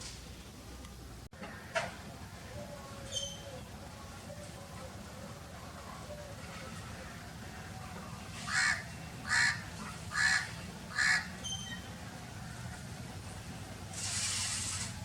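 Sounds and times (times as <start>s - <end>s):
crow cawing: 8.5s - 11.3s.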